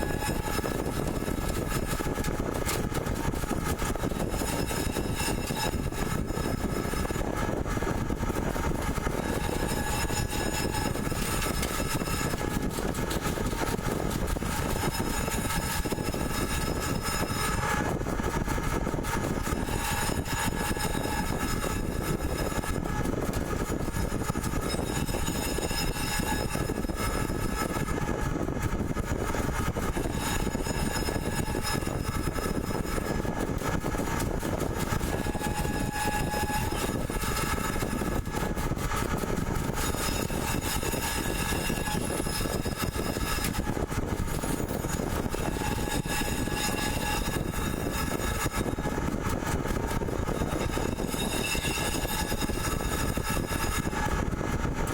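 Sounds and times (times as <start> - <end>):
pipe threading machine running: 29.2 - 54.9.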